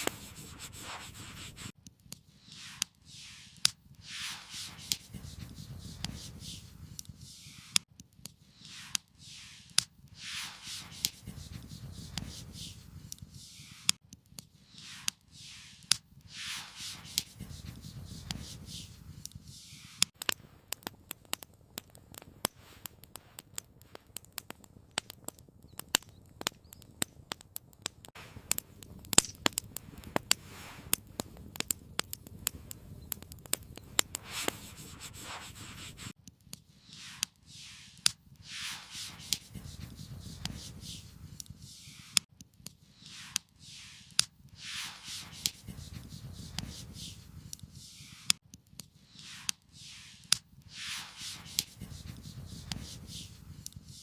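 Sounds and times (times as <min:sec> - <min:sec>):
soft rushes of noise: 0:00.0 - 0:01.8, 0:02.4 - 0:07.8, 0:08.5 - 0:13.9, 0:14.6 - 0:20.1, 0:29.9 - 0:31.0, 0:33.9 - 0:36.1, 0:36.8 - 0:42.3, 0:42.9 - 0:48.4, 0:49.1 - 0:53.4
campfire crackling and popping: 0:00.0 - 0:54.0.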